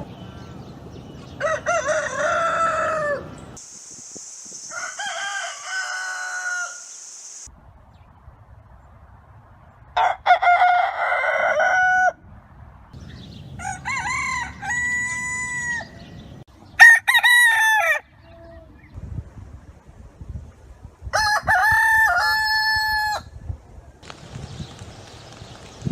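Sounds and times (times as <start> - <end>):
roosters crowing: 1.3 - 3.6, 4.6 - 7.2, 10.0 - 12.2, 13.6 - 16.2, 16.8 - 18.3, 21.2 - 23.3.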